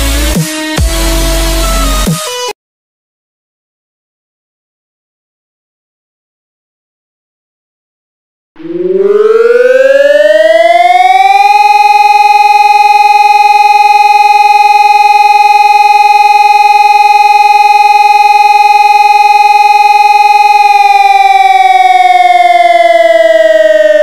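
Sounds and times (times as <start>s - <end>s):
civil defense siren: 8.6s - 24.0s.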